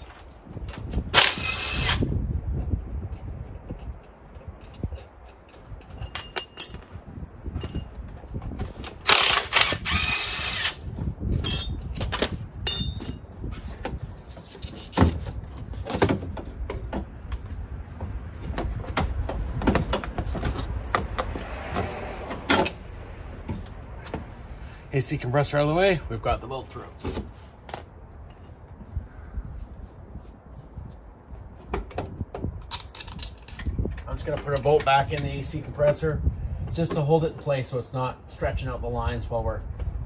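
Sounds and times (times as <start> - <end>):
power tool running: 1.2 - 2.1, 9.0 - 10.8
knocks and metal clinks: 2.6 - 13.4, 18.9 - 24.3, 27.1 - 28.6, 31.7 - 36.1.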